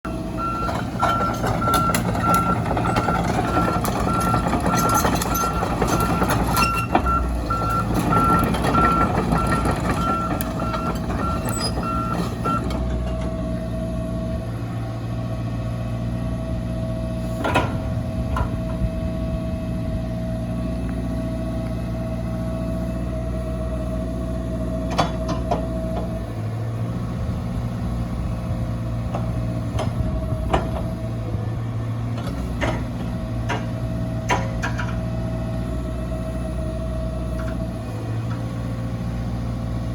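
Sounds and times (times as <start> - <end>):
excavator diesel engine running: 0.1 - 39.9
travel alarm beeping: 0.4 - 12.7.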